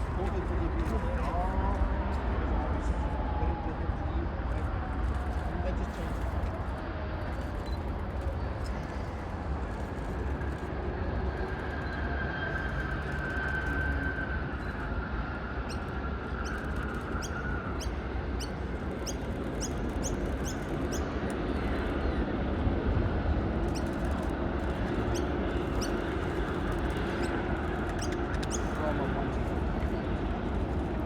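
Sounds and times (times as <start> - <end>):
jet engine rumble and whine: 0.0 - 31.0.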